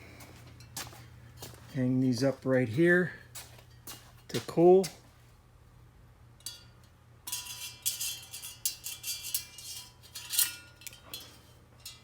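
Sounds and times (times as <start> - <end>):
metal parts clinking on hangers: 6.4 - 12.0.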